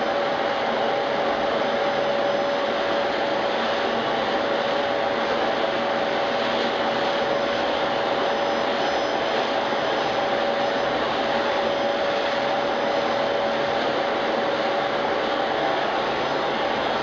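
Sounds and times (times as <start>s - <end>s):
vacuum cleaner running: 0.0s - 17.0s.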